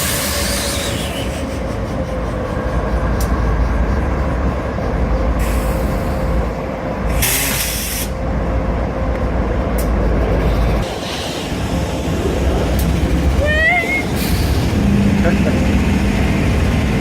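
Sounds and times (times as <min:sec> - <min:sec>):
train rumbling by: 0:00.0 - 0:17.0
hiss of air: 0:07.1 - 0:08.2.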